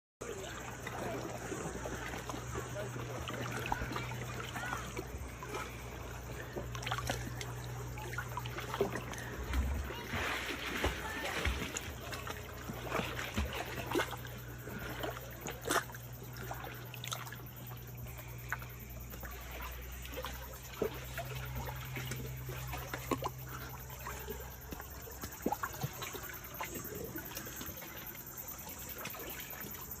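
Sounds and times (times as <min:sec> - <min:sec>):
small splashes and knocks: 0:00.2 - 0:30.0
steady low hum: 0:00.2 - 0:30.0
water trickling and lapping: 0:00.2 - 0:30.0.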